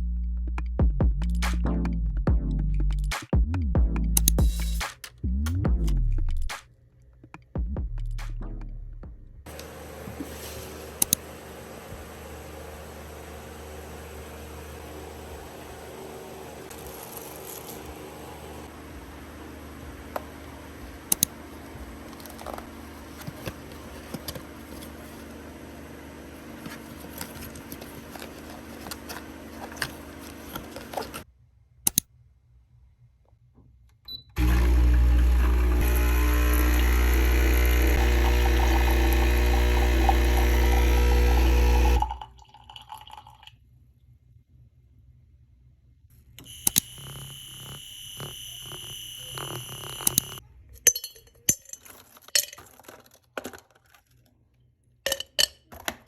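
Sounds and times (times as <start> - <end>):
coffee machine humming: 9.5 - 31.2, 34.4 - 43.2, 46.4 - 50.4
liquid pouring: 34.4 - 43.6.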